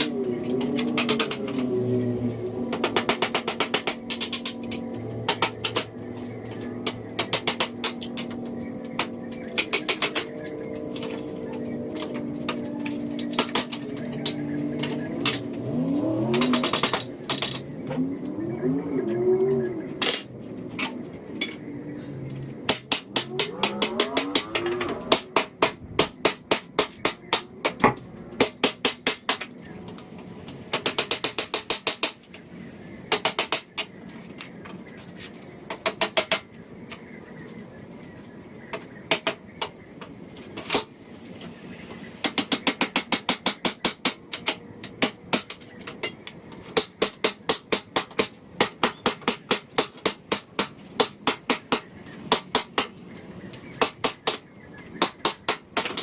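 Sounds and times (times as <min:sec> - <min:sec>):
hammer striking nails and wood: 0:00.0 - 0:18.1, 0:20.0 - 0:21.6, 0:22.3 - 0:37.1, 0:38.6 - 0:41.1, 0:41.8 - 0:56.0.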